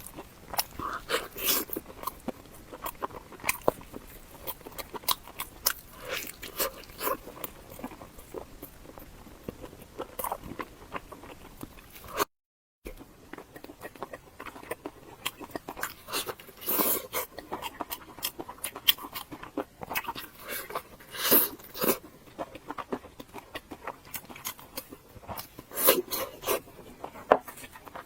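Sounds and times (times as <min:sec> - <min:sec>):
chewing with wet mouth clicks: 0:00.0 - 0:12.2, 0:12.9 - 0:28.0
crunching bites: 0:00.0 - 0:12.2.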